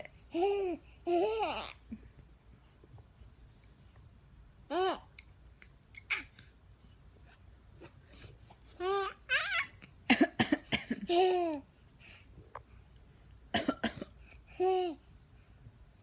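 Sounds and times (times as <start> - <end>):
baby laughing: 0.3 - 1.8, 11.0 - 11.6
baby imitating a cough: 10.1 - 11.6, 13.5 - 14.2.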